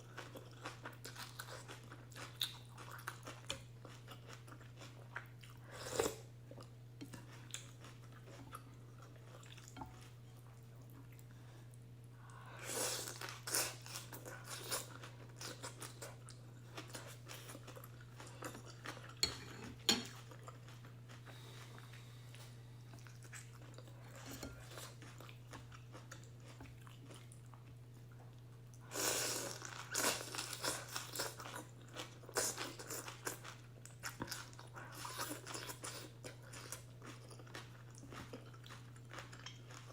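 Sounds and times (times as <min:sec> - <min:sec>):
steady low hum: 0:00.0 - 0:39.9
chewing and mouth noises: 0:29.4 - 0:39.9.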